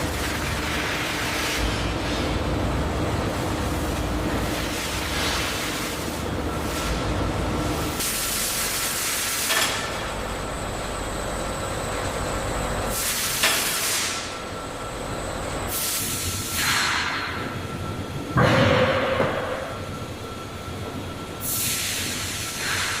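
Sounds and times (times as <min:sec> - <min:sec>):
machinery hum: 0:00.0 - 0:23.0
hissing air release: 0:15.7 - 0:17.3, 0:21.4 - 0:23.0.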